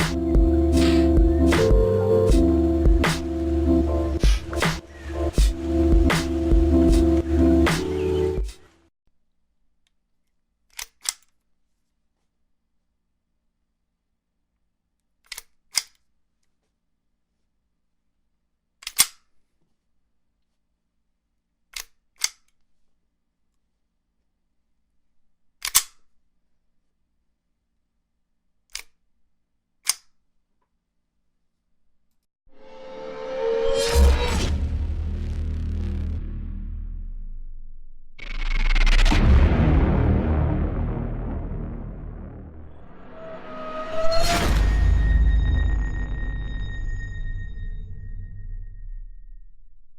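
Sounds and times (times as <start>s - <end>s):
deep bass tone: 0.0s - 8.6s, 32.6s - 49.9s
rifle bolt metallic clacks: 18.8s - 19.3s, 25.6s - 26.1s
noisy swell with high whine: 32.6s - 49.6s
heavy boom: 32.6s - 49.9s.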